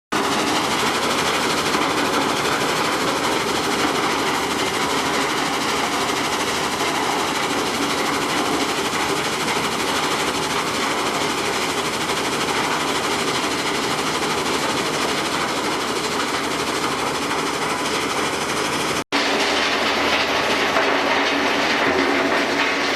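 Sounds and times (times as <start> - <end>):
machinery clattering: 0.1 - 22.9.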